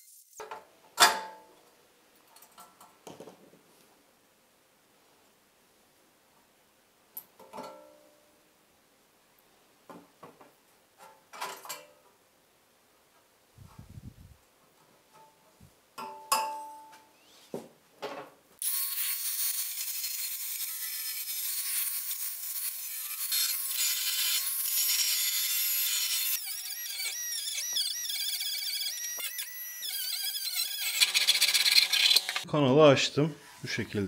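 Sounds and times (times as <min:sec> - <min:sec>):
power tool grinding copper pipe: 0:18.6 - 0:32.4.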